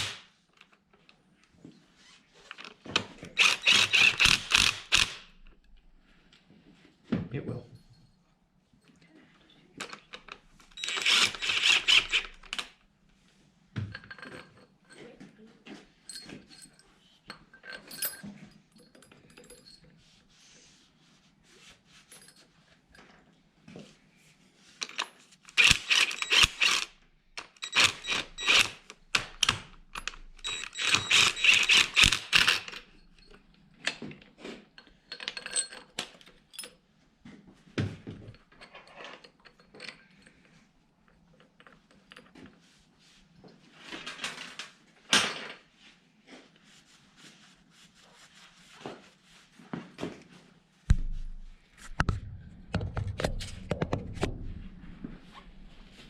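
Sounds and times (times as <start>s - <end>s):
metal bolts and tools clinking: 9.8s - 12.8s, 13.8s - 15.2s, 16.1s - 20.0s, 24.8s - 36.8s, 38.2s - 42.4s.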